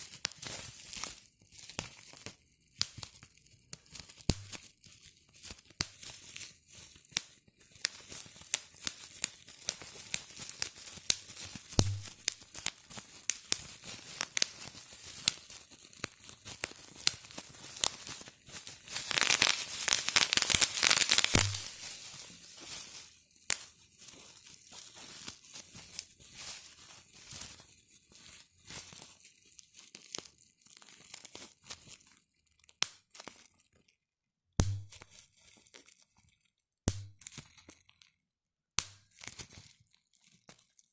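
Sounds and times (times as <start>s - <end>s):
bubble wrap popping: 0.0s - 33.7s, 34.6s - 36.3s, 36.9s - 38.1s, 38.8s - 40.9s
plastic sheet crinkling: 3.9s - 32.3s, 34.6s - 36.4s.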